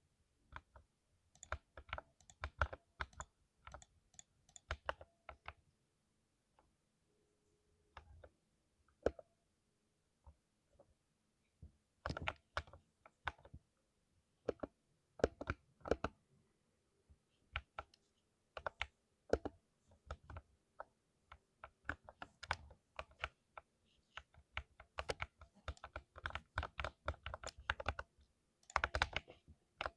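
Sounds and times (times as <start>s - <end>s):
mechanical keyboard typing: 1.3s - 5.5s, 24.2s - 29.9s.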